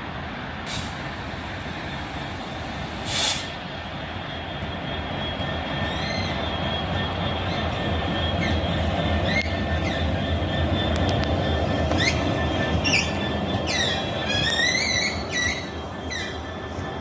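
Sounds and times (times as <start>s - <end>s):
diesel train rumbling past: 0.0s - 17.0s
high squeals sliding in pitch: 4.2s - 17.0s.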